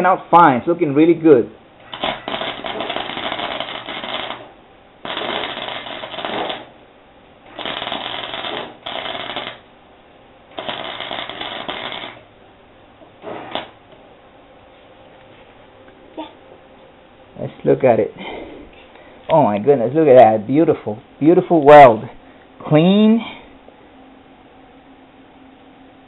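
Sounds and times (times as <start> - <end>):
welder crackling: 1.8 - 9.8, 10.5 - 12.3, 13.0 - 14.0.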